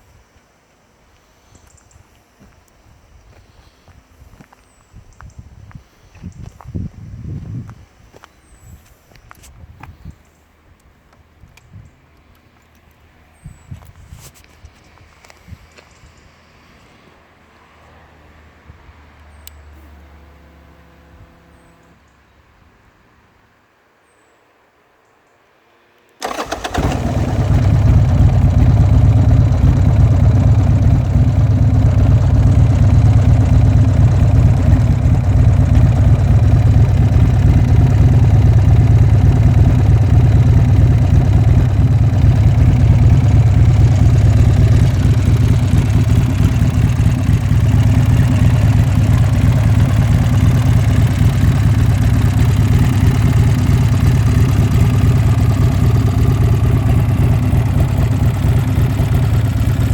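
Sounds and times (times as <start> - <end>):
motorcycle engine starting and idling: 17.5 - 22.4, 26.1 - 59.9.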